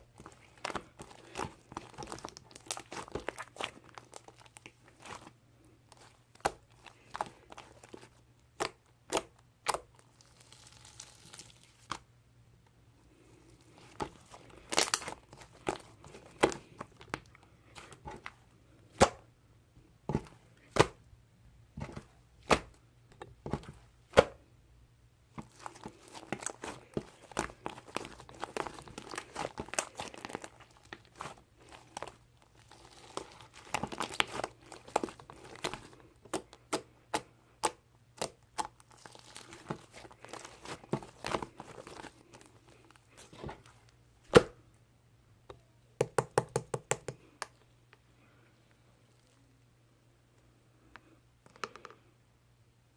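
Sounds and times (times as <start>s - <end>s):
crinkling and tearing: 0.1s - 12.0s, 13.5s - 18.4s, 25.4s - 37.3s, 38.2s - 44.0s.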